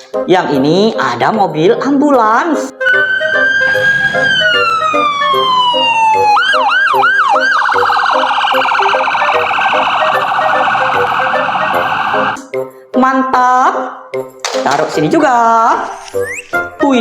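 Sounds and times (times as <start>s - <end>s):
faint background music: 0.0s - 3.1s, 12.4s - 17.0s
electronic ambulance siren: 2.7s - 12.4s.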